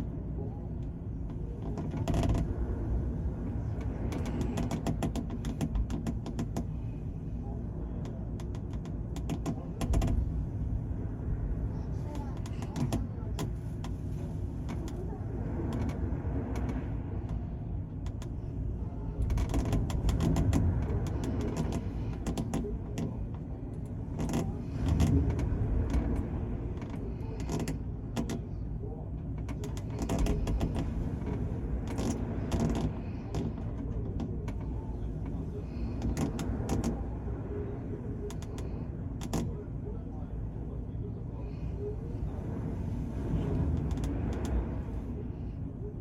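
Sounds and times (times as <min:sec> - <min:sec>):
ship engines rumbling: 0:00.0 - 0:46.0
water rushing along hull: 0:00.0 - 0:46.0
short clicks and creaks: 0:26.8 - 0:28.4, 0:29.4 - 0:37.0.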